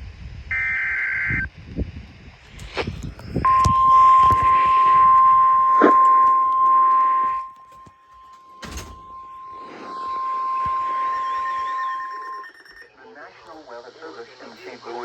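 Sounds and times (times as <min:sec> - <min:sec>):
warbling data burst tones: 0:02.6 - 0:15.0
steady alarm tone: 0:03.4 - 0:15.0.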